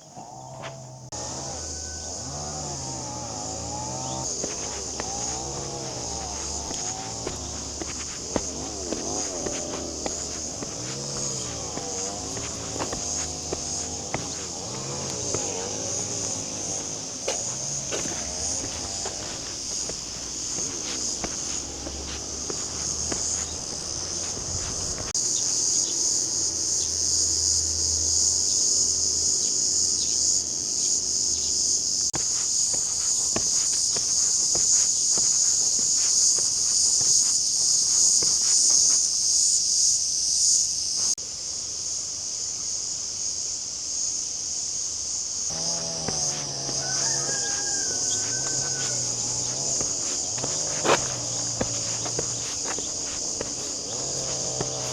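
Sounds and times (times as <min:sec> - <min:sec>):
low drawn-out farm animal call: 0:00.0 - 0:20.0, 0:45.5 - 0:54.9
insects shrilling: 0:00.0 - 0:26.0, 0:31.8 - 0:41.2, 0:45.1 - 0:54.9
footsteps on a path: 0:00.2 - 0:25.6, 0:32.2 - 0:39.2, 0:45.5 - 0:54.9.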